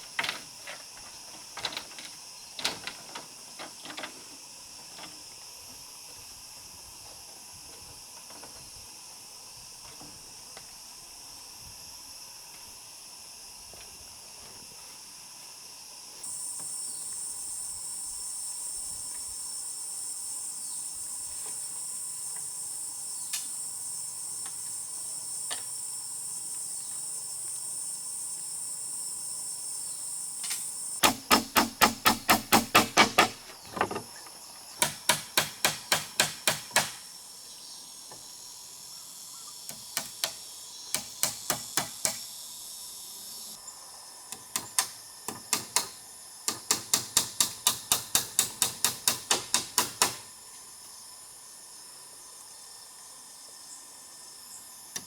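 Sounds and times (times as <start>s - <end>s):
insects chirring: 0.0s - 55.0s
rapid hammer strikes: 31.0s - 33.4s, 34.8s - 37.0s, 40.0s - 40.4s, 41.0s - 42.2s, 44.4s - 50.3s.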